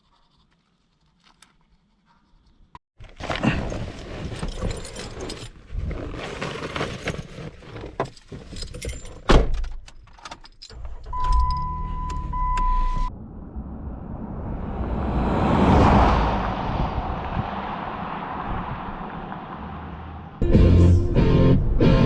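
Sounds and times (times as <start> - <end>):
electronic warning beep: 11.2 - 13.1.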